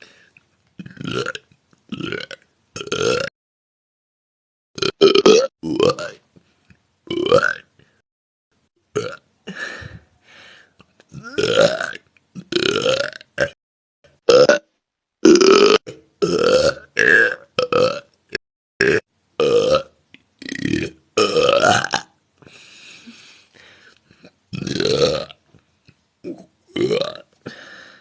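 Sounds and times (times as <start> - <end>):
woman burping: 11.1 - 13.6, 14.2 - 18.0, 18.8 - 19.6.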